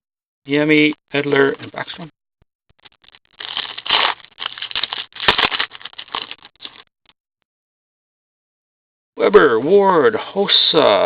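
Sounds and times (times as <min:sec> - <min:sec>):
cards rustling and scraping: 0:02.8 - 0:06.9.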